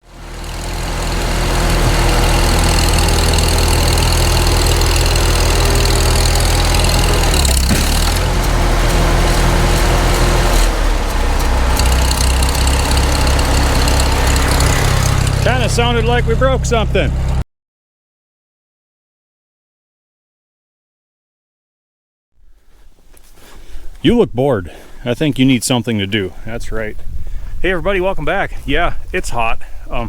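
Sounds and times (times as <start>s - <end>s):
tractor engine running: 0.0s - 17.4s.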